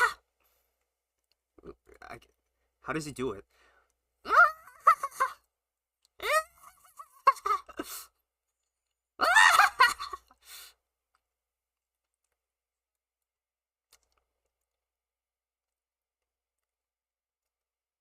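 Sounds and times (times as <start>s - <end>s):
person laughing: 4.3s - 5.4s, 6.2s - 8.1s, 9.2s - 10.4s.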